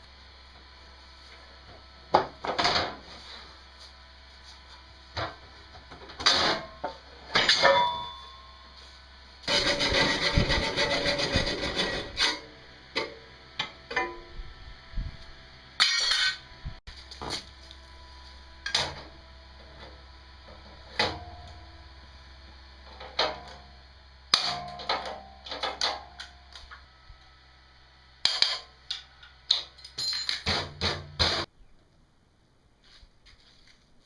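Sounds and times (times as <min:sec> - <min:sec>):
low steady hum: 0:00.0 - 0:34.0
metal clanks and knocks: 0:05.2 - 0:08.2.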